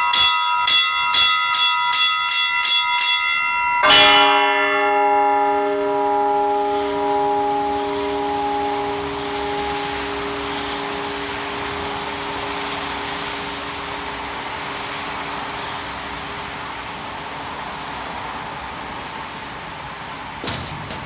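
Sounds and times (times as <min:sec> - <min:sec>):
church bells ringing: 0:00.0 - 0:17.0
steady rushing noise: 0:04.8 - 0:21.0.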